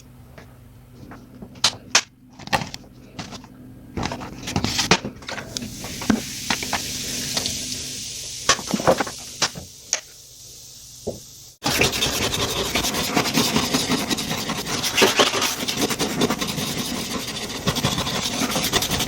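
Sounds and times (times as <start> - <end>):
sharp handling clicks and knocks: 0.4 - 5.6
steady hiss: 5.4 - 11.8.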